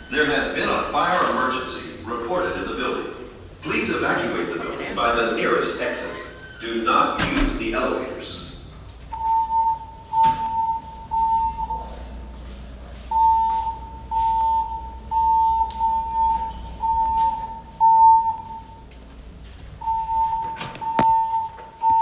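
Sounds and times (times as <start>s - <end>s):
voice announcements: 0.0s - 19.0s
fire alarm beeps: 5.2s - 12.0s, 13.1s - 19.0s, 19.8s - 22.0s.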